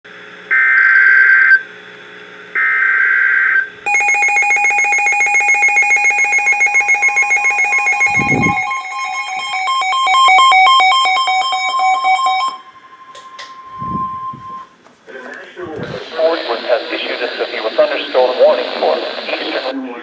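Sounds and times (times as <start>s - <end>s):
screeching digital data bursts: 3.4s - 12.0s
pulsing electronic alert tone: 3.9s - 14.7s.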